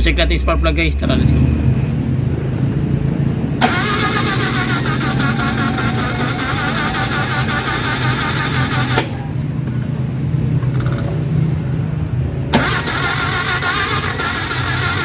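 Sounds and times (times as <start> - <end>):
engine cranking on starter: 3.6 - 9.6, 12.5 - 15.0.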